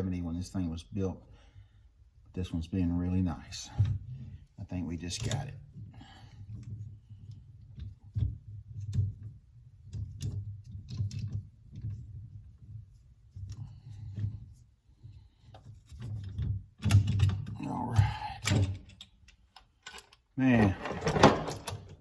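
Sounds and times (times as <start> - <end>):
metal parts clunking: 16.0 - 22.0
metal tools clicking and knocking: 18.4 - 22.0.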